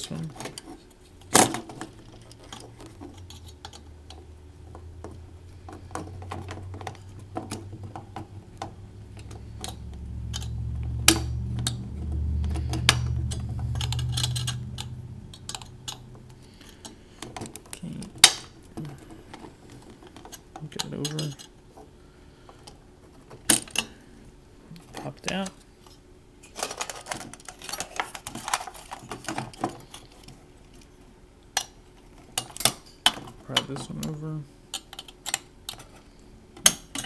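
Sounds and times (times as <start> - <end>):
low hum: 0.0 - 25.0
sharp metal clicks: 12.4 - 18.5.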